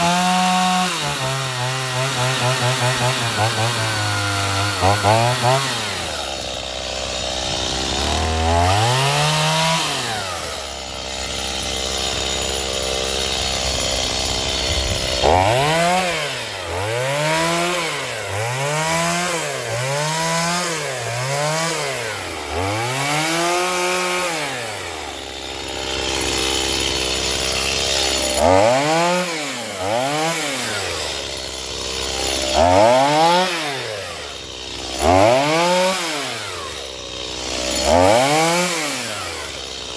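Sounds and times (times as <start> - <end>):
chainsaw idling: 0.0 - 39.9
chainsaw revving: 0.0 - 39.9.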